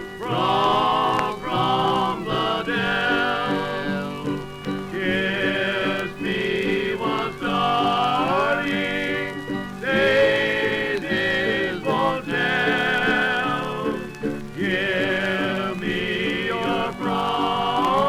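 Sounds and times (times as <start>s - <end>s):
old-time string band music: 0.0s - 18.0s.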